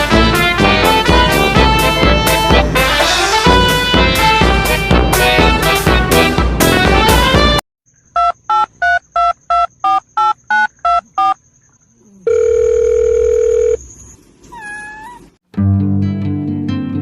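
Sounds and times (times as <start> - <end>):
steady dial tone: 8.2 - 11.4, 12.2 - 13.8
telephone keypad beeps: 8.2 - 11.4.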